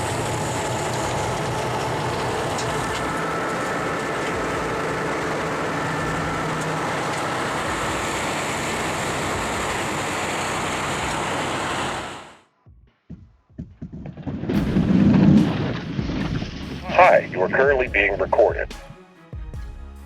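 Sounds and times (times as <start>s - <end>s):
truck engine running under load: 0.0s - 12.4s.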